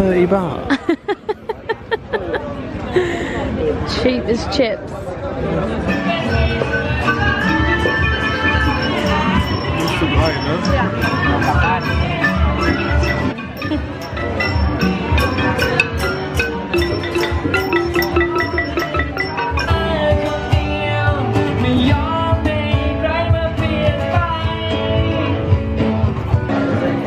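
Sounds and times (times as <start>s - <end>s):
tune of clipped struck notes: 6.5s - 20.8s
person singing: 11.6s - 25.6s.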